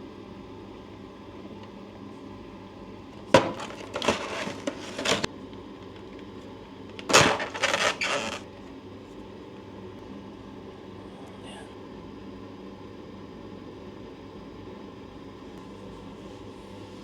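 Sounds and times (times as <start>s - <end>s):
packaging crinkling: 3.3s - 5.3s, 6.9s - 8.5s.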